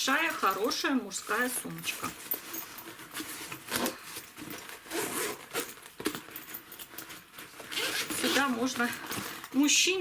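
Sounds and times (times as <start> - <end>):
bag rustling and scraping: 0.0 - 9.7
zipper sliding open: 3.1 - 6.2, 7.6 - 8.7.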